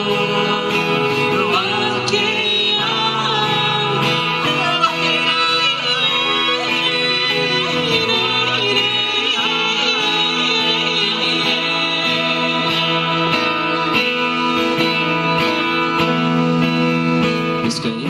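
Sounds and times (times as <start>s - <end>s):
instrumental music with plucked guitar: 0.0s - 18.0s.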